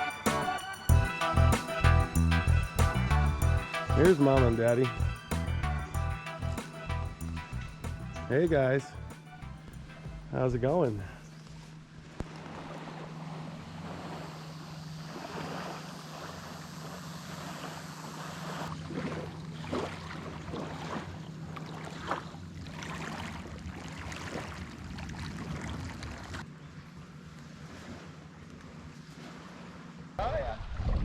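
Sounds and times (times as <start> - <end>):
steady low hum: 0.0 - 23.9
paddle splashing in water: 12.0 - 26.4, 27.4 - 30.0.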